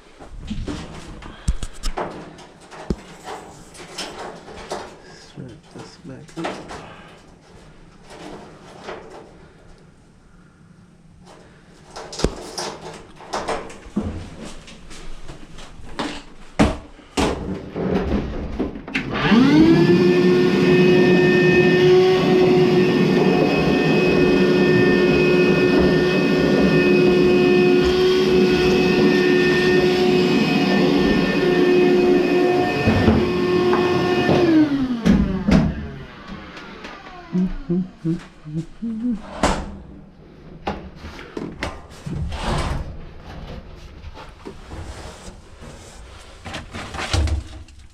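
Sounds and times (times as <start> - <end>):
parts knocking and clattering: 0.3 - 9.8, 11.2 - 19.0
dryer motor whining: 19.0 - 39.5.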